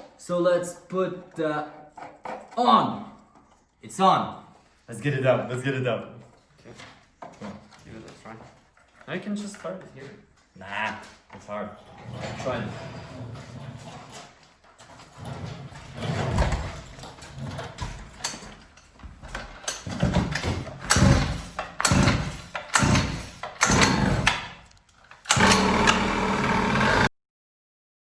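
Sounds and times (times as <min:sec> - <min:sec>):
two-stroke engine starting: 0:19.8 - 0:24.6, 0:25.3 - 0:27.1.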